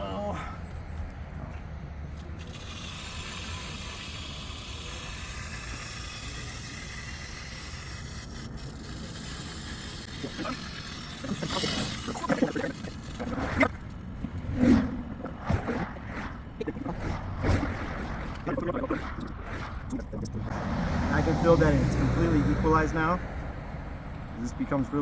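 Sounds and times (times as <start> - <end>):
water hissing through a valve: 2.4 - 13.8.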